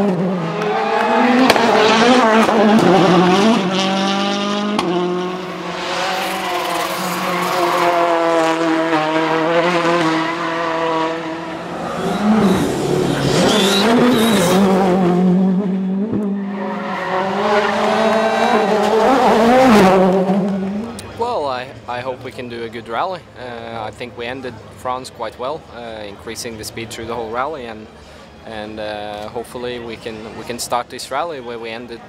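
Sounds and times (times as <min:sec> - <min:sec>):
rally car engine revving: 0:00.0 - 0:21.2.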